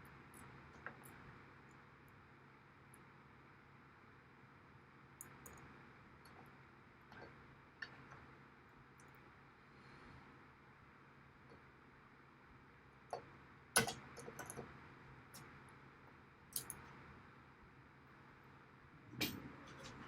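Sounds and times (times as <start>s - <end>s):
parts clicking and knocking: 16.6s - 16.8s.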